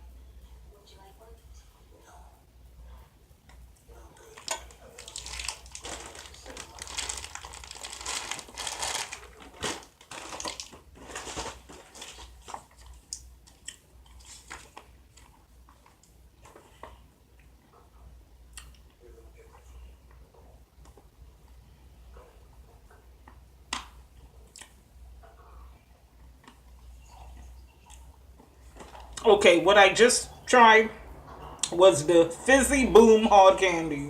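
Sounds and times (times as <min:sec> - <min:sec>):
small clicks and crunches: 0:04.3 - 0:16.9
plastic wrapper crinkling: 0:04.4 - 0:16.6.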